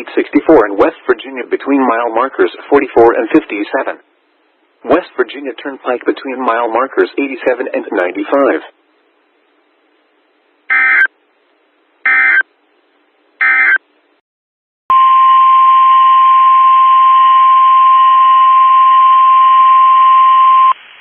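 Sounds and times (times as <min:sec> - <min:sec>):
digital data tone bursts: 0:10.7 - 0:11.1, 0:12.1 - 0:12.4.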